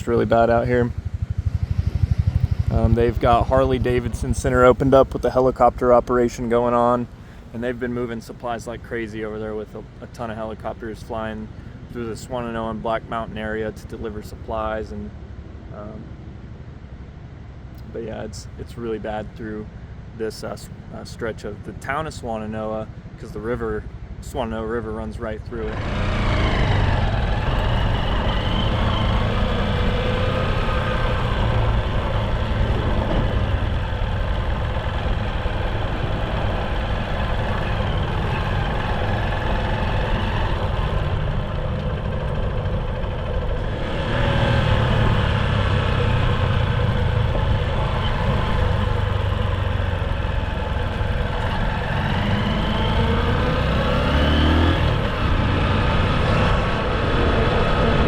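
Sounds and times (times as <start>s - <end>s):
car engine: 0.0s - 8.8s, 25.5s - 58.0s
road noise: 0.0s - 58.0s.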